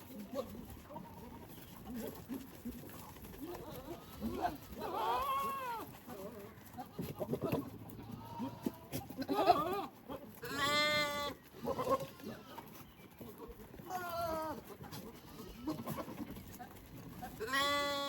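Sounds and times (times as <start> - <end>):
goats bleating: 0.0 - 12.8, 13.8 - 16.5, 17.2 - 18.0.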